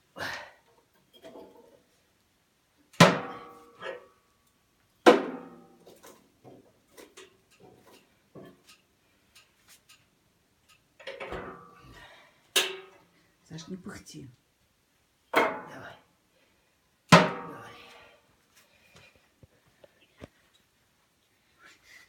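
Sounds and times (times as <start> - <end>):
metallic clangs of stove: 12.6 - 13.0.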